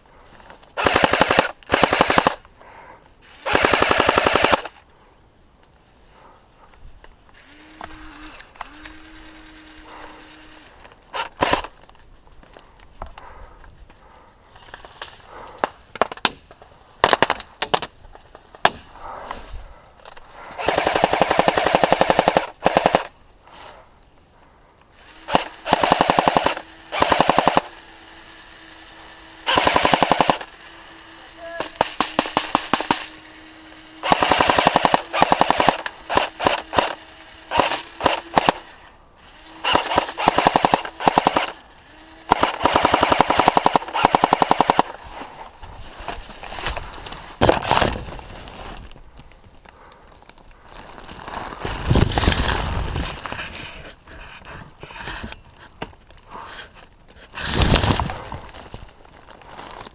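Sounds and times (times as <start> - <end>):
airsoft rifles firing: 0.8 - 2.4, 3.4 - 4.8, 11.1 - 11.8, 20.6 - 23.2, 25.2 - 27.8, 29.3 - 30.8, 31.4 - 38.8, 39.5 - 45.1.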